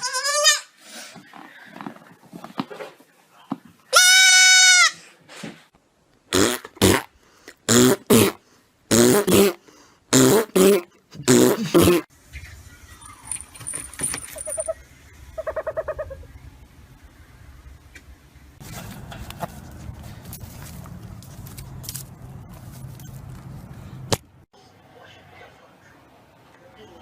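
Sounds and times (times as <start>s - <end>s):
high-pitched animal call: 15.4s - 16.4s.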